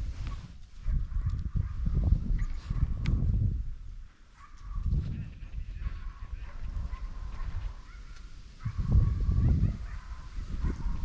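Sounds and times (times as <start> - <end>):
distant dogs baying and yelping: 0.2 - 3.3, 4.2 - 11.0
low microphone rumble: 8.6 - 11.0.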